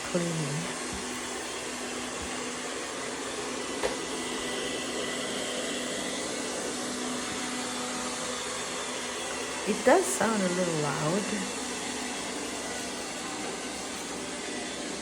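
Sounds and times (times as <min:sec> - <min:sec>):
robot vacuum running: 0:00.0 - 0:15.0.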